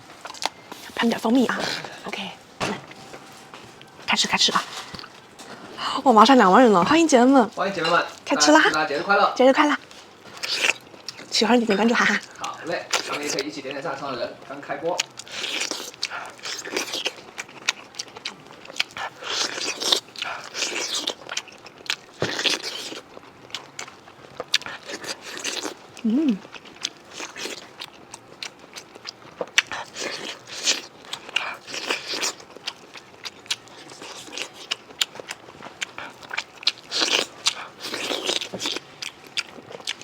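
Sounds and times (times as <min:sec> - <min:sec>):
crunchy chewing: 0:00.0 - 0:05.8, 0:07.6 - 0:40.0.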